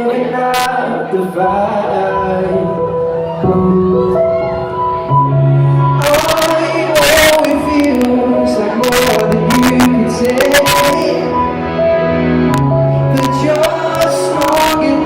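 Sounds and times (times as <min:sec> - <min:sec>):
live pop band music: 0:00.0 - 0:15.0
harsh speaker crackle: 0:06.0 - 0:11.2.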